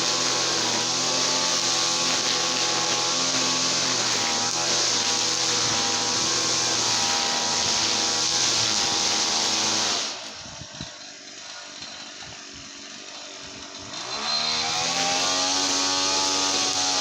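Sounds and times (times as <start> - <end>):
brush cutter engine revving: 0.0 - 17.0.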